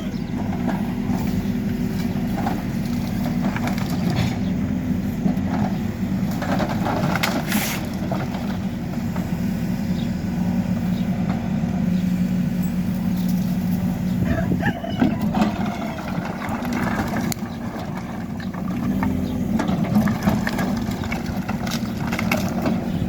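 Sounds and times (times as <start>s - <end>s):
diesel engine running: 0.0s - 23.0s
noisy clatter: 0.5s - 4.5s, 5.3s - 9.2s, 15.0s - 23.0s.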